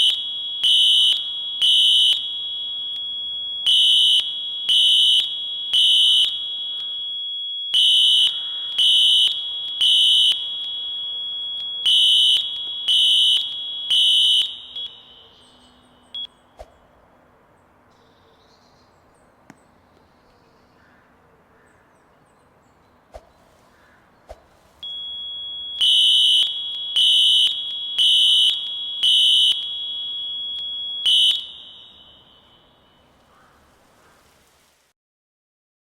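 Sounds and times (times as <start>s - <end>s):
fire alarm horn pulses: 0.0s - 16.3s, 24.8s - 33.2s
steady high alarm tone: 0.0s - 16.4s, 24.8s - 33.2s.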